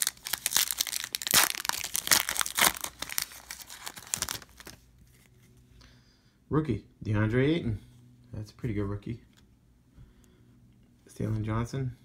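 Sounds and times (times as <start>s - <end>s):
foil wrapper tearing and crinkling: 0.0s - 4.8s.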